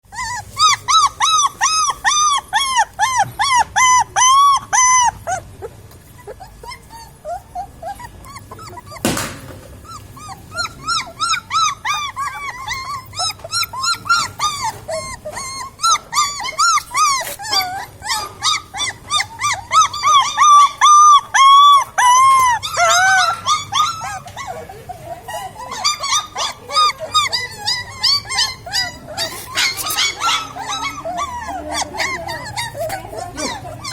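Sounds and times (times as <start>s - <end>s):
puppies whimpering and yelping: 0.0s - 33.9s
sharp knock: 9.0s - 9.7s.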